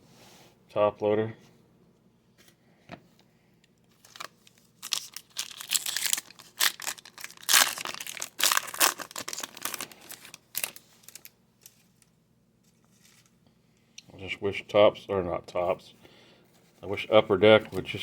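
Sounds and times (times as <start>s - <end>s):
thin plastic crinkling: 3.9s - 13.4s.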